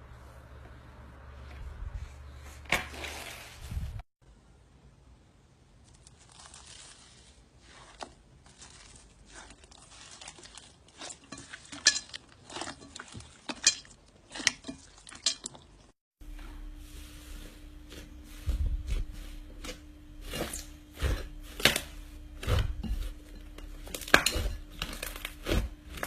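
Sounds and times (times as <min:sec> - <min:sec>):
slime crackling: 0:05.8 - 0:13.6.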